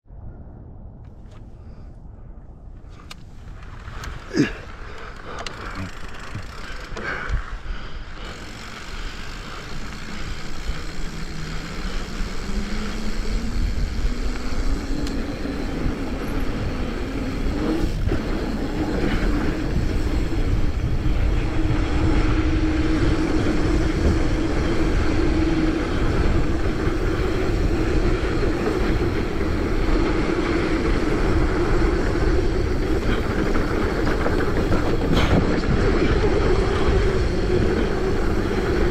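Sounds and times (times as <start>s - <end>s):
wind rushing over microphone: 0.0s - 38.9s
bike rattling on dirt trail: 2.9s - 38.9s
rising hum: 8.2s - 33.1s.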